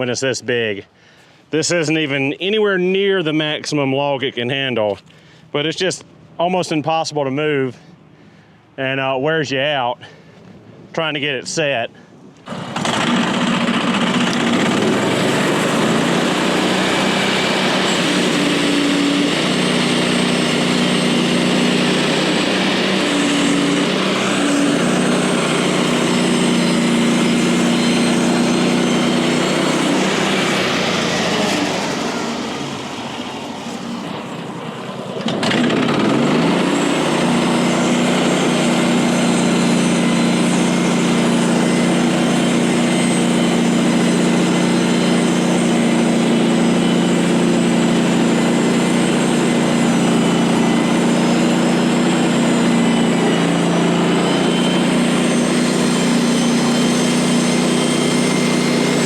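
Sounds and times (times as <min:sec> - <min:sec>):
small gasoline engine running: 0:12.4 - 0:59.0.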